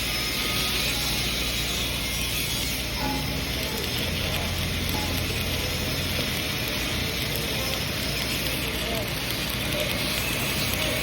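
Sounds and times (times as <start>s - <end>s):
welding arc crackling and sizzling: 0.0s - 11.0s.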